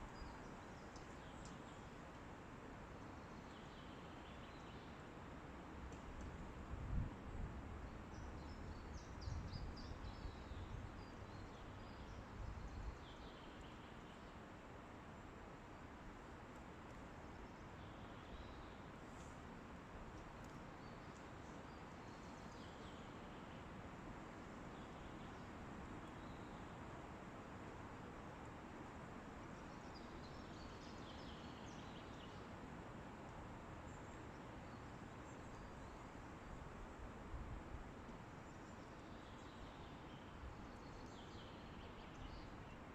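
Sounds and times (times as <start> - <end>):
songbird chirping: 0.0 - 2.0, 38.4 - 42.9
wind in trees: 0.0 - 42.9.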